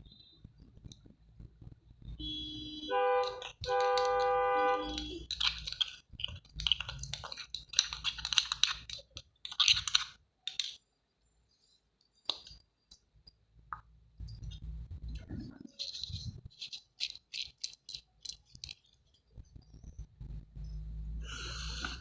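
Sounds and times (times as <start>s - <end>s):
small clinks and clicks: 3.2s - 10.8s, 15.8s - 19.9s.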